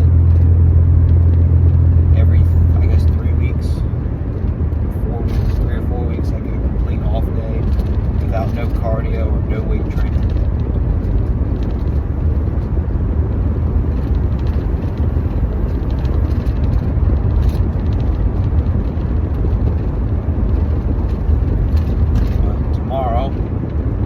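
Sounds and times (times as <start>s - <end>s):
steady low rumble: 0.0s - 24.0s.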